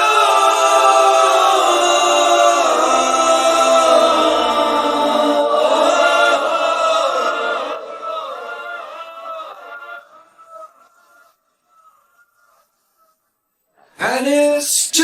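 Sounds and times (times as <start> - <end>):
male vocal harmonies: 0.0 - 12.0, 14.0 - 15.0.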